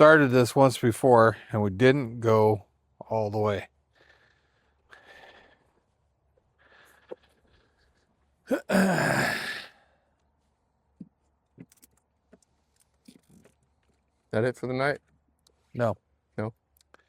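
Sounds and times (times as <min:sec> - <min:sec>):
man sighing heavily: 0:08.5 - 0:09.8
faint clicks: 0:16.7 - 0:17.0.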